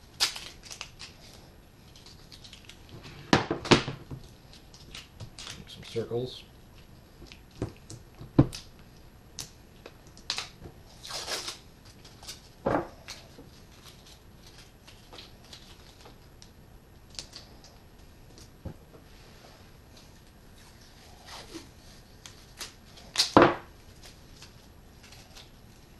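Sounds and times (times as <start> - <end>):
tape ripping: 0.1 - 1.3, 10.2 - 12.4, 21.2 - 25.5.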